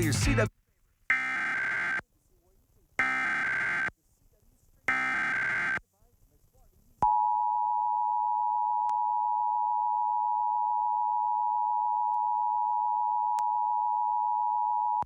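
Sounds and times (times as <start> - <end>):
two-tone alert signal: 4.9 - 5.8.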